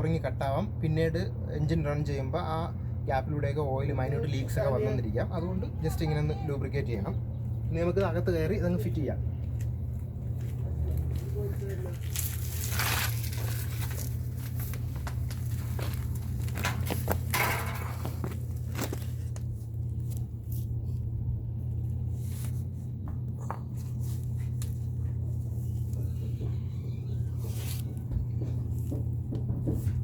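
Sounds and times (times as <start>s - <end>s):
steady low hum: 0.0s - 30.0s
handling parts rustling and scraping: 10.3s - 21.1s.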